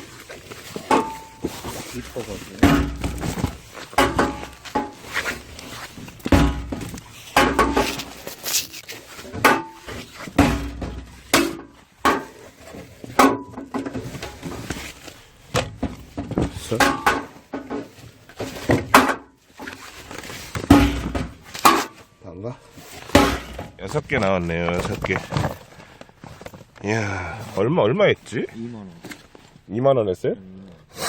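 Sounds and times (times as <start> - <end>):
plush toys rustling into bag: 0.0 - 9.3, 22.7 - 27.0
knocks and clacks of handling: 0.0 - 22.1, 22.7 - 26.9.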